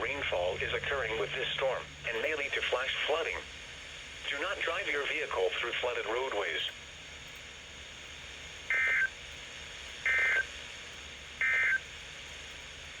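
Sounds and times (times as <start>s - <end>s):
faint radio hiss: 0.0s - 7.0s.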